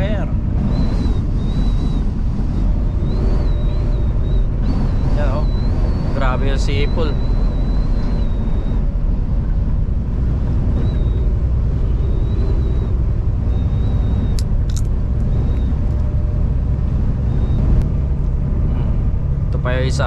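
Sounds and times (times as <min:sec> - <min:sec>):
truck cab low rumble: 0:00.0 - 0:20.0
wind whistling: 0:00.0 - 0:20.0
sharp clicks: 0:14.4 - 0:14.9.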